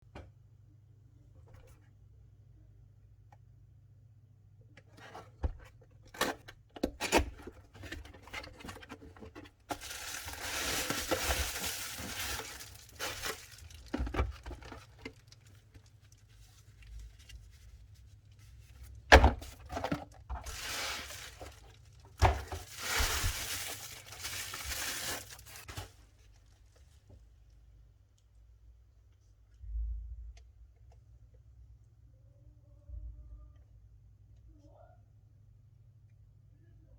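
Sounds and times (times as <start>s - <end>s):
wrapping rustling and tearing: 8.1s - 18.4s, 19.5s - 26.8s.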